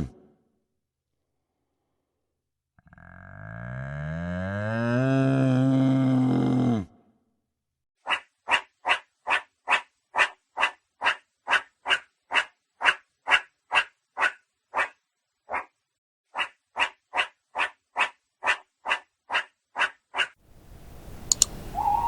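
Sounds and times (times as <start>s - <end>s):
animal call: 20.7s - 22.0s.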